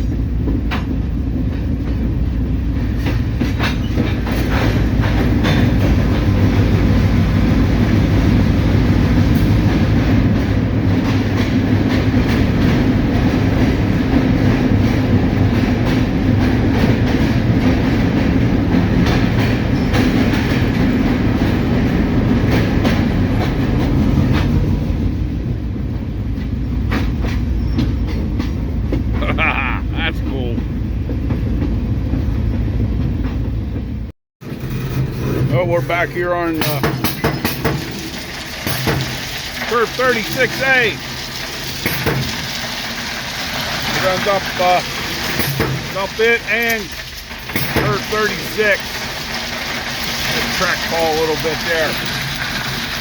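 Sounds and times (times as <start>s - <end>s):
locomotive engine drone: 0.0s - 53.0s
train wheels clicking on track: 0.0s - 53.0s.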